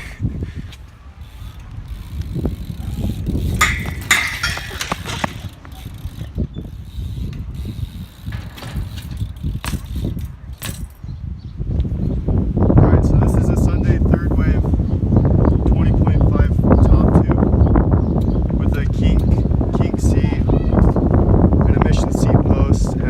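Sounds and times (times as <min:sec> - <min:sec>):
bike parts rattling and clicking: 0:00.6 - 0:11.1.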